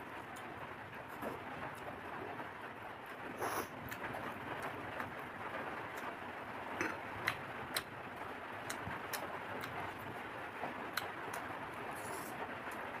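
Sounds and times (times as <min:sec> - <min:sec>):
crunchy chewing: 0:10.9 - 0:12.4.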